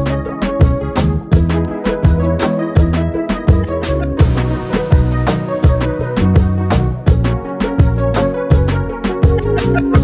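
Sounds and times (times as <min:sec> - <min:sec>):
music with drums and bass: 0:00.0 - 0:10.0.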